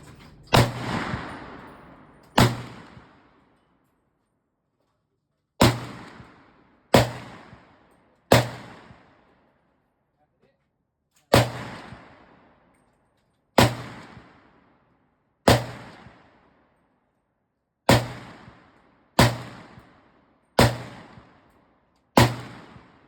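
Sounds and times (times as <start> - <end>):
gunshots with echo: 0.0 - 3.4.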